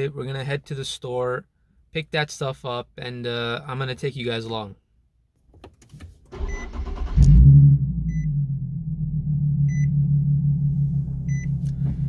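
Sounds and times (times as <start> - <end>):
car warning chime beeps: 6.4 - 6.9, 8.0 - 8.4, 9.6 - 10.1, 10.8 - 12.0
car engine idling: 6.4 - 12.0.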